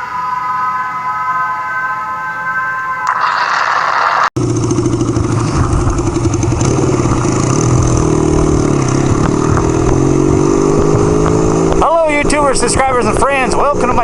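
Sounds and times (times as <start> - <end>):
motorcycle engine running: 4.4 - 14.0.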